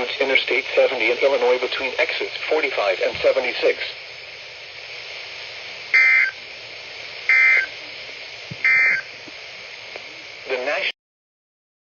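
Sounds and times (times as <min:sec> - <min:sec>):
radio hiss: 0:00.0 - 0:11.0
raspy digital data warble: 0:06.0 - 0:06.4, 0:07.3 - 0:07.7.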